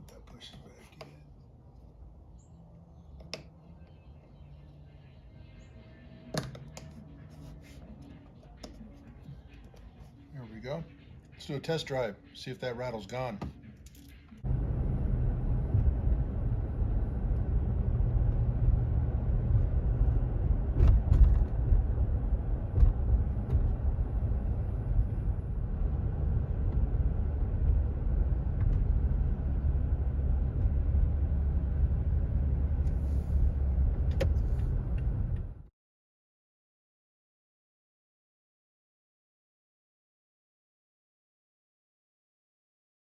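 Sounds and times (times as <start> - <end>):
road and drivetrain rumble: 13.5 - 35.7.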